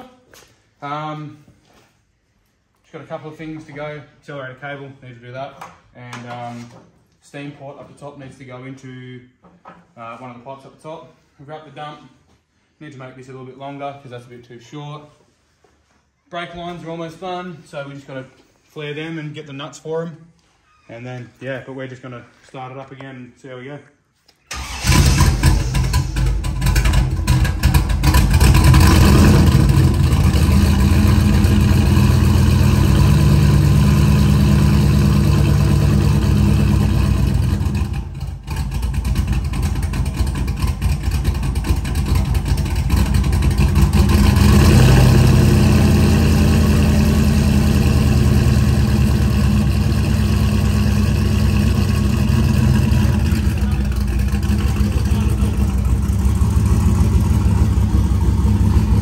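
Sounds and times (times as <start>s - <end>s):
car engine idling: 24.5s - 59.0s.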